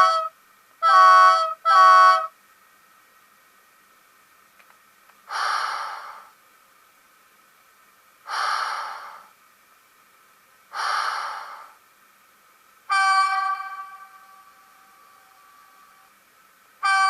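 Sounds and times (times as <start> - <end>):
locomotive horn blast: 0.0 - 2.3, 12.9 - 15.8, 16.8 - 17.0
air hisses: 5.2 - 6.4, 8.2 - 9.4, 10.7 - 11.8.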